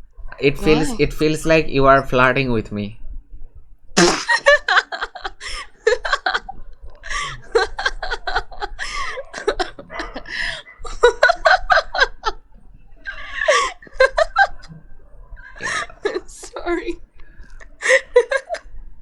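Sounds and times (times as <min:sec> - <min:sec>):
person laughing: 0:00.4 - 0:01.2, 0:04.0 - 0:12.4, 0:15.4 - 0:17.0, 0:17.8 - 0:18.6.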